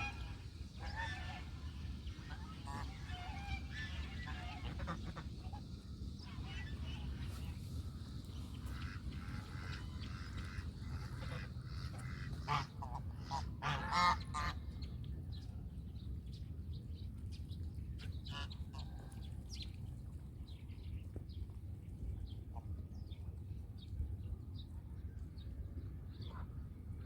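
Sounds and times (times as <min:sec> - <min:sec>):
geese honking: 0:00.0 - 0:05.6, 0:08.6 - 0:14.5
low background rumble: 0:00.0 - 0:21.0.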